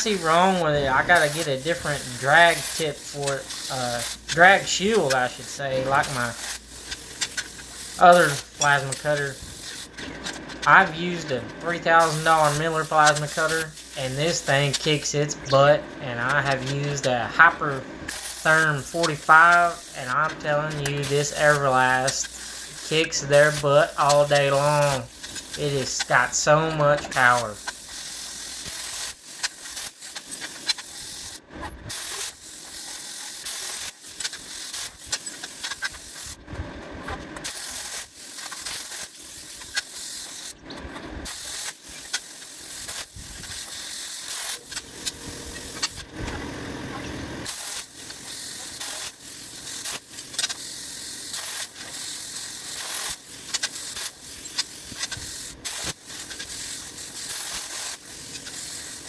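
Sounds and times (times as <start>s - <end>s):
plasma cutter hissing and crackling: 0.0s - 36.4s, 37.4s - 40.6s, 41.2s - 59.0s.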